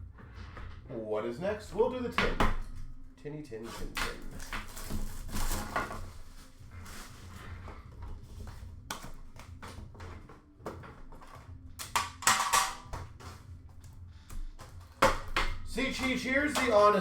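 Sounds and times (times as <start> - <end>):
scraping rustle: 3.5 - 8.8.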